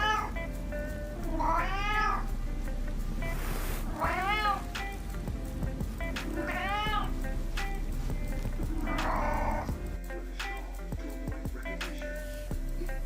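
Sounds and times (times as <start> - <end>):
cat meowing: 0.0 - 0.3, 1.3 - 2.3, 3.9 - 4.7, 6.3 - 7.1, 8.8 - 9.7
background music: 0.0 - 13.0.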